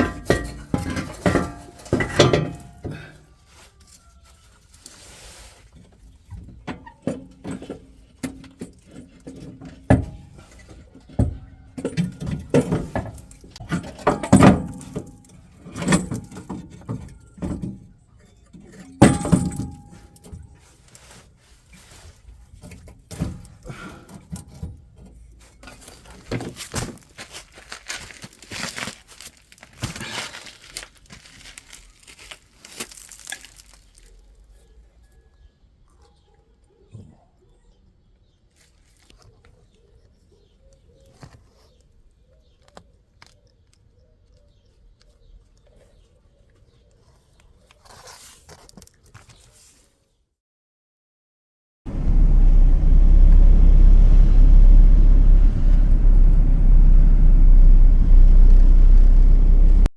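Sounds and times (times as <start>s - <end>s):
metal tools clinking and knocking: 0.0s - 2.8s.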